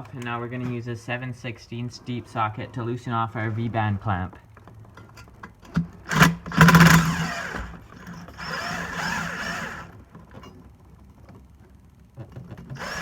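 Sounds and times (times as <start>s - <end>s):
power tool spinning a socket: 6.1s - 10.0s, 12.7s - 13.0s.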